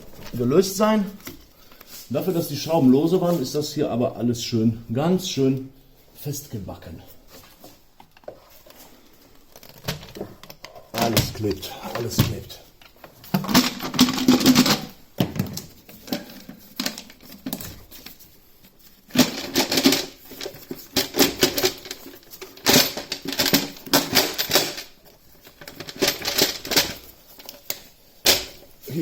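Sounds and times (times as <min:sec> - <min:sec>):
tools and metal parts clattering: 0:09.5 - 0:29.0.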